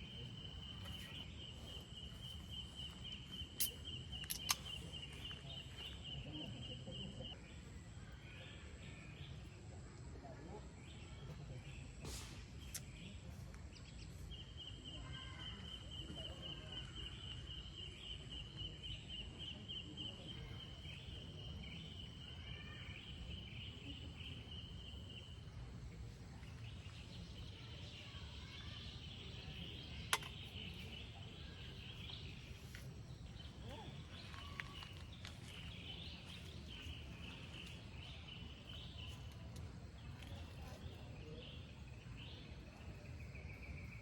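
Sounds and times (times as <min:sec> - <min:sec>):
faint bird chirps: 0:00.0 - 0:44.0
sharp click: 0:03.6 - 0:04.8.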